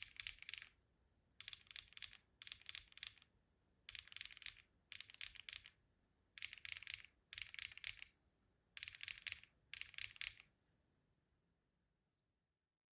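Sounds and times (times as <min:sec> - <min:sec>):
mechanical keyboard typing: 0:00.0 - 0:00.8, 0:01.4 - 0:03.3, 0:03.9 - 0:05.8, 0:06.4 - 0:08.2, 0:08.8 - 0:10.5.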